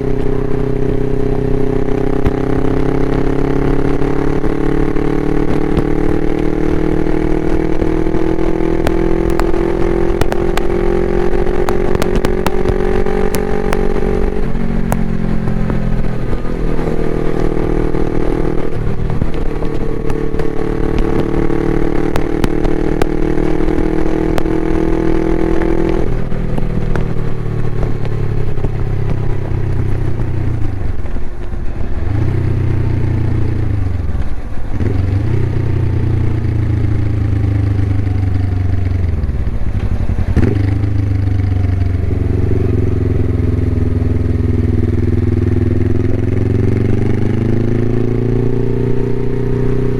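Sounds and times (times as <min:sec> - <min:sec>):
motorcycle engine revving: 0:00.0 - 0:49.9
sharp crackling clicks: 0:07.2 - 0:31.6.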